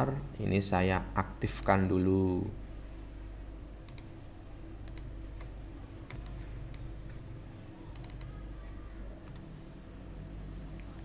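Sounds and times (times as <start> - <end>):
faint low hum: 0.0 - 11.0
computer clicks: 3.8 - 4.1, 4.8 - 5.5, 6.1 - 6.9, 7.9 - 8.4.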